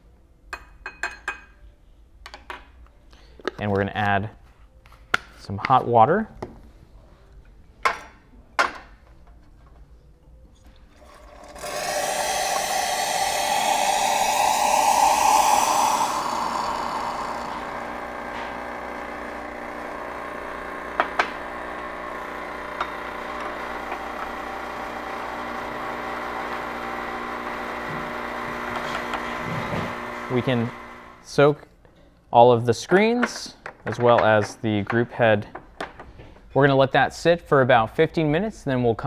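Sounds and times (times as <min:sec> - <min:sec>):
hot water pouring into container: 0:11.0 - 0:31.1.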